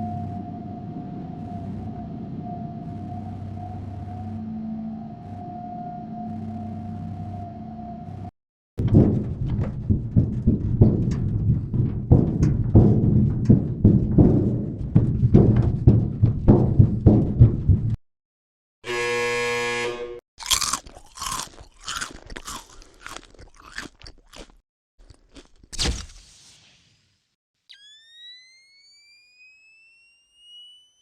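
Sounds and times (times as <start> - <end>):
buzzy tone: 0.0 - 8.3, 18.8 - 20.2
dense crunching: 20.4 - 26.0.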